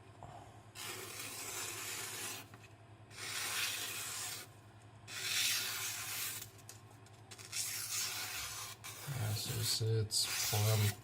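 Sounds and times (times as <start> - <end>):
knife slicing through paper: 5.1 - 6.5, 7.4 - 11.0.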